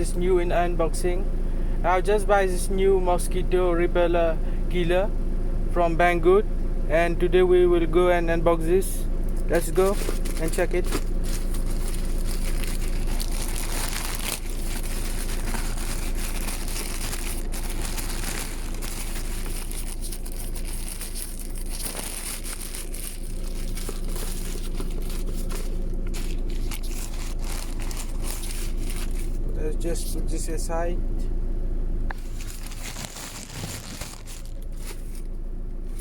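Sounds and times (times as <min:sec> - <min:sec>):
steady low hum: 0:00.0 - 0:36.0
plastic wrapping crinkling: 0:09.6 - 0:29.4, 0:32.1 - 0:35.3.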